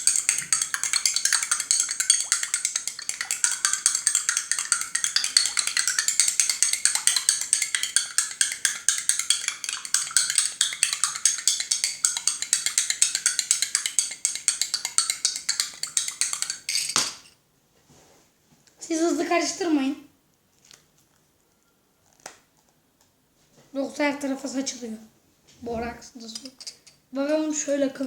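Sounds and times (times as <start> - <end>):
spoon clinking in container: 0.0 - 17.3.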